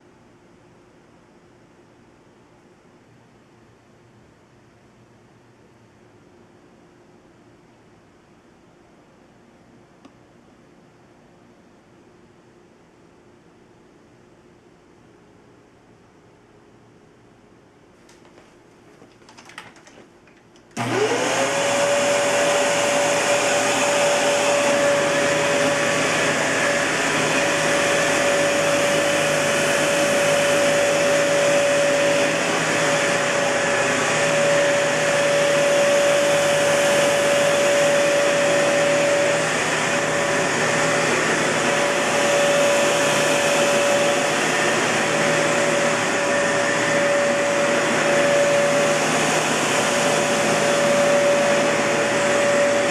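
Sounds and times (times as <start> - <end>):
vacuum cleaner motor whine: 20.7 - 52.9.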